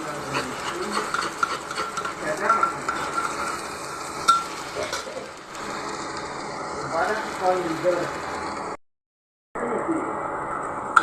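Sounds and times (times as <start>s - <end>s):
metal spoon scraping a pan: 0.0s - 5.2s
light sizzling: 0.0s - 8.8s.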